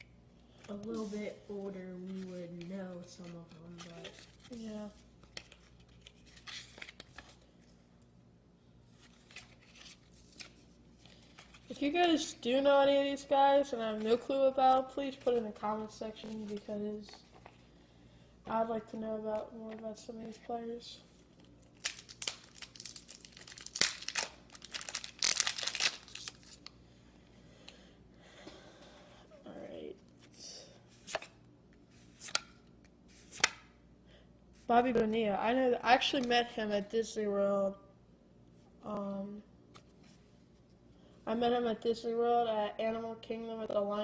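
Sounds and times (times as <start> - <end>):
low room hum: 0.0 - 44.0
cards rustling: 0.6 - 7.8, 8.9 - 17.6, 21.2 - 26.7
card pack wrapper crinkling: 21.4 - 26.7.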